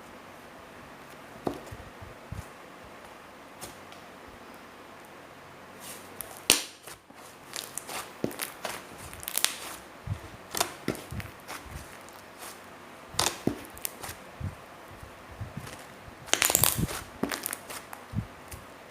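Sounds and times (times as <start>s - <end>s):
slime squishing and popping: 7.5s - 9.8s, 13.2s - 14.2s, 15.6s - 18.0s.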